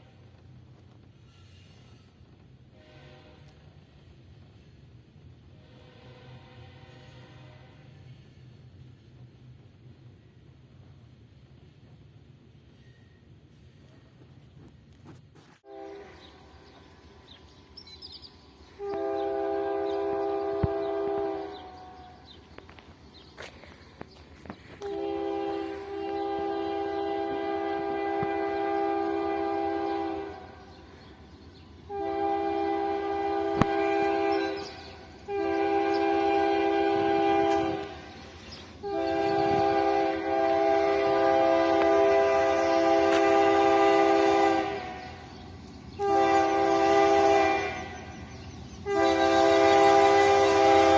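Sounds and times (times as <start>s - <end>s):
locomotive air horn: 2.7s - 3.9s, 5.5s - 8.2s, 15.4s - 17.0s, 18.7s - 22.8s, 24.6s - 31.0s, 31.9s - 45.3s, 45.9s - 50.9s.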